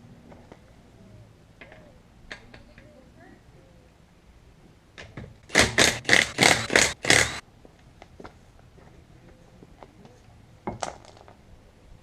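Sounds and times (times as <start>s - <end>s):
rasping scraping strokes: 5.5s - 7.4s.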